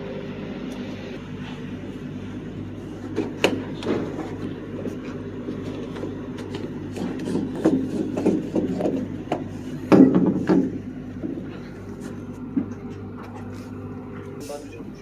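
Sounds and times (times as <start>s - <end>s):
low mechanical hum: 0.0s - 15.0s.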